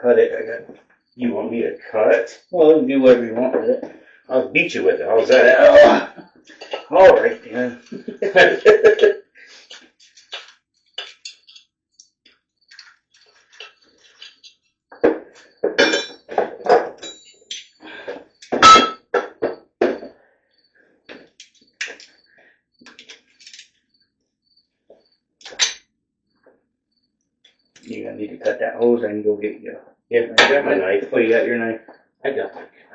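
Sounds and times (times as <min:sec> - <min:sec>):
metal tools clinking and knocking: 0:12.8 - 0:19.0, 0:22.9 - 0:23.7, 0:25.4 - 0:25.8.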